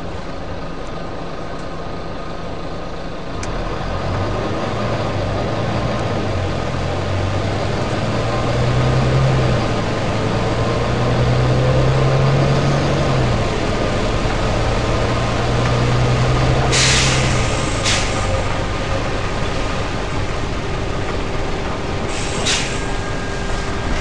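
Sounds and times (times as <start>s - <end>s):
bus diesel engine running: 0.0s - 24.0s
compressed air hiss: 16.7s - 18.5s, 22.1s - 23.0s.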